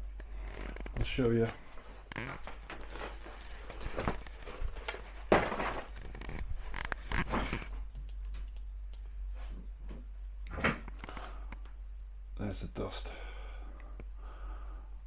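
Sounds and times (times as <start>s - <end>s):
knocks and clatter of handling: 0.6s - 7.8s.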